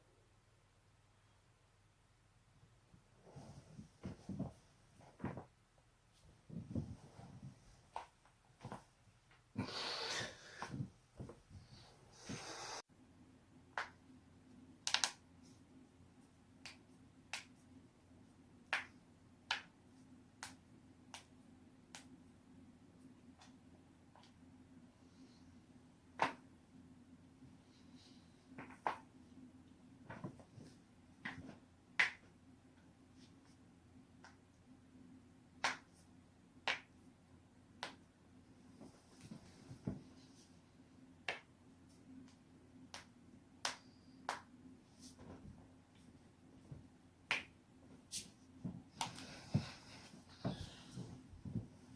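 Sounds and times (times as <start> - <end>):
soft noise: 38.2 - 51.9.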